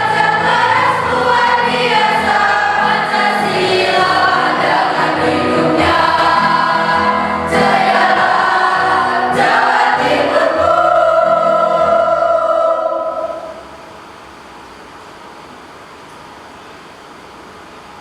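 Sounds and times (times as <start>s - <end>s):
choir singing in harmony: 0.0s - 13.9s.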